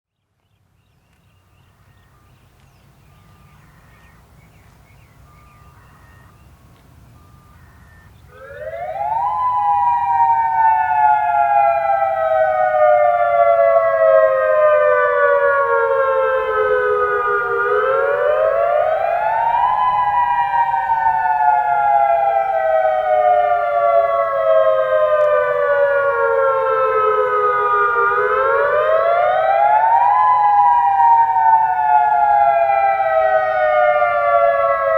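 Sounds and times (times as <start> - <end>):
warning siren wailing: 5.2 - 34.9.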